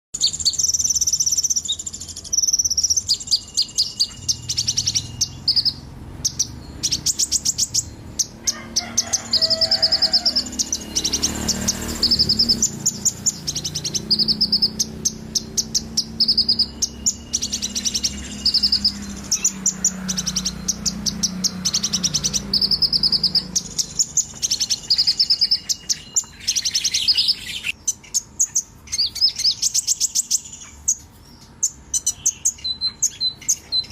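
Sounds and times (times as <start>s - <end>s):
songbird chirping: 0.2s - 33.9s.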